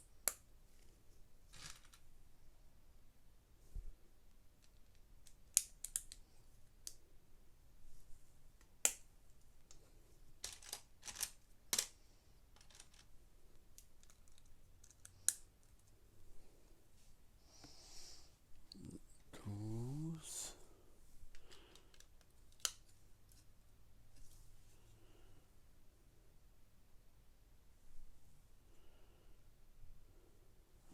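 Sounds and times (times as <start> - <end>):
plastic bricks clicking: 4.6 - 6.2, 10.4 - 12.0, 13.8 - 15.9
soft rustle: 20.5 - 25.1.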